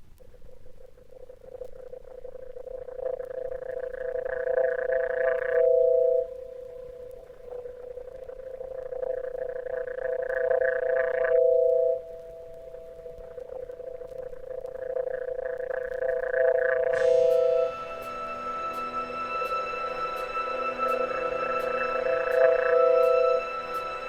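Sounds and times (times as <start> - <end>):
held electronic tones: 16.4 - 24.0.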